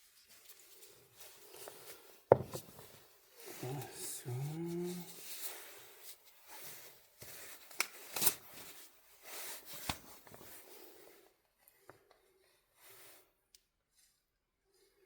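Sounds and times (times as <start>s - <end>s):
hands rustling parts: 0.2s - 3.1s.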